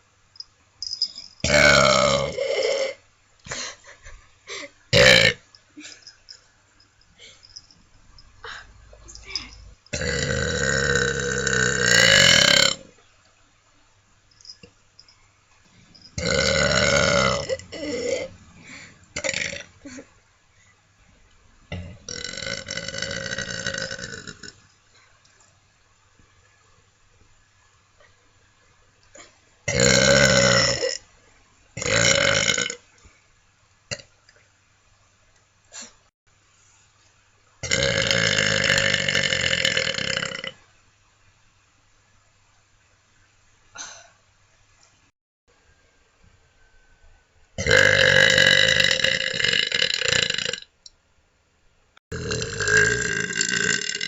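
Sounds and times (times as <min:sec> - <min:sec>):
person burping: 0:00.8 - 0:03.7, 0:04.9 - 0:06.1, 0:08.5 - 0:12.9, 0:16.1 - 0:18.4, 0:19.2 - 0:20.1, 0:21.7 - 0:24.6, 0:29.2 - 0:31.1, 0:31.8 - 0:32.8, 0:33.9 - 0:34.1, 0:37.6 - 0:40.6, 0:47.6 - 0:50.7, 0:52.1 - 0:54.0.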